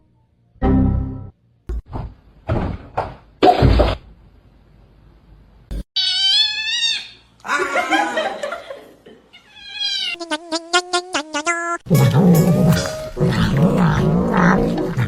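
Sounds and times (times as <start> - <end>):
cat meowing and yowling: 6.0 - 7.2, 9.4 - 10.2.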